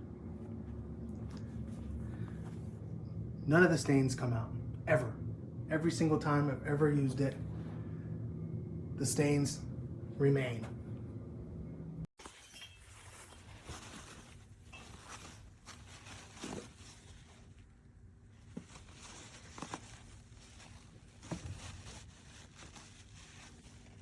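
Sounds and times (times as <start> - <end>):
rustling and handling: 0.2 - 3.0, 12.2 - 24.0.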